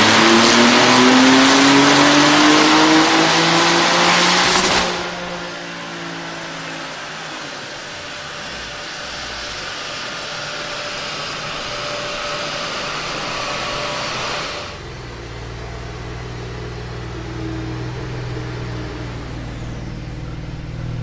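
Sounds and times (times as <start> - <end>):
car engine idling: 0.0 - 21.0
rushing air hiss: 4.4 - 14.8.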